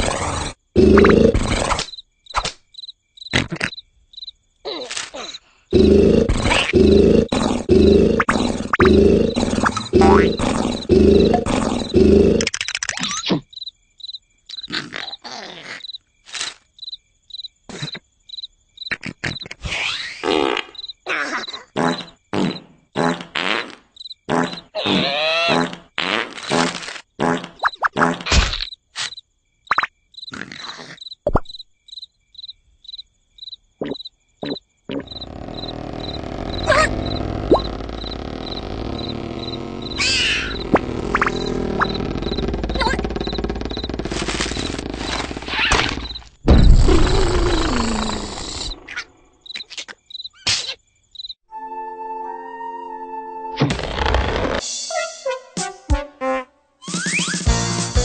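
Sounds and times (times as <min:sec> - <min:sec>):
cartoon snoring: 0:00.0 - 0:01.8, 0:05.7 - 0:12.5, 0:34.4 - 0:45.7, 0:46.8 - 0:48.9
high cricket chirps: 0:00.0 - 0:22.8, 0:23.8 - 0:24.7, 0:28.6 - 0:51.4.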